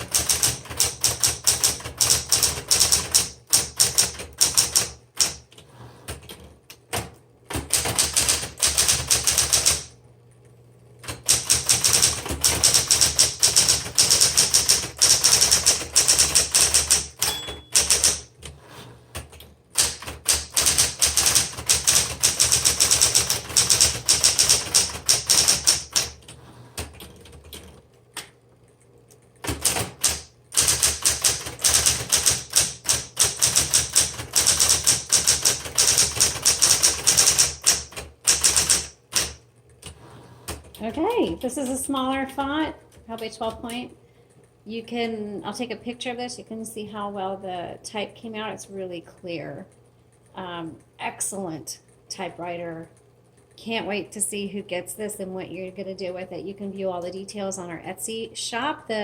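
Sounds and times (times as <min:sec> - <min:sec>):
electric typewriter typing: 0:00.0 - 0:10.0, 0:11.0 - 0:28.3, 0:29.2 - 0:42.2.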